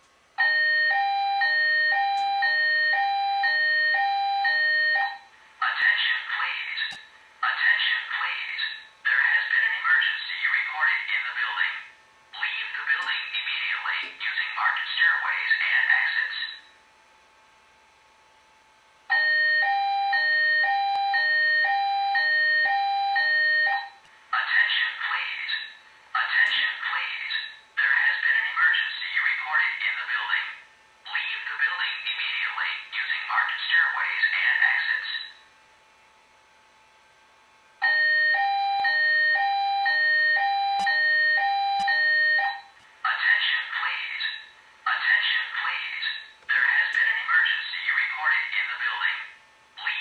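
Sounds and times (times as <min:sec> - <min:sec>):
hi-lo evacuation alarm tone: 0:00.4 - 0:05.4, 0:19.1 - 0:24.0, 0:37.8 - 0:42.8.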